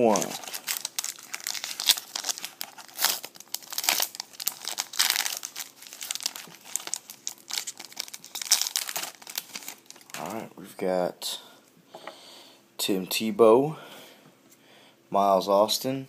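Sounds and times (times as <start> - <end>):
wrapper tearing and crinkling: 0.0 - 10.3.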